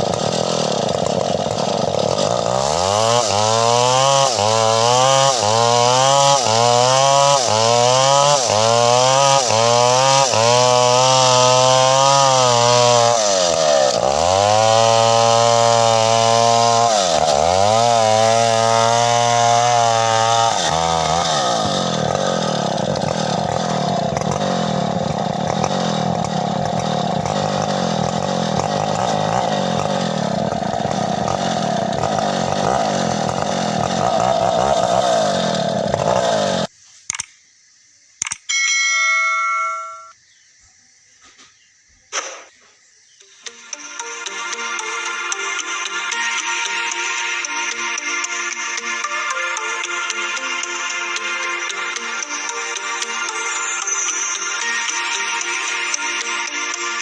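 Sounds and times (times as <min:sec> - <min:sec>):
chainsaw running at high revs: 0:00.0 - 0:36.7, 0:43.7 - 0:57.0.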